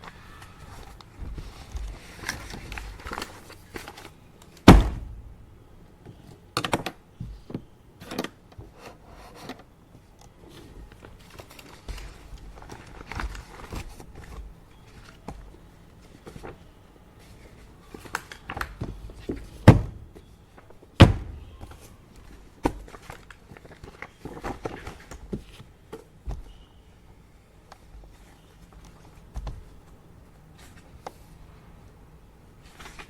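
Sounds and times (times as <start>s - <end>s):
loud thunks on desk: 4.7s - 5.2s, 19.6s - 20.0s, 21.0s - 21.4s.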